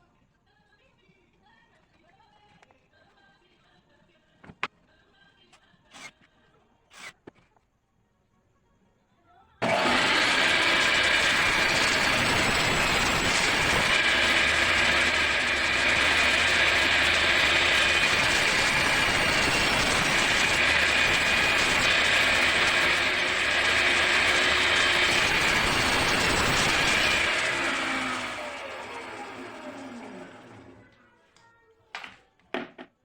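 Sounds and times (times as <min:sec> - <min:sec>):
power tool cutting wood: 0:06.9 - 0:07.2, 0:09.6 - 0:30.8.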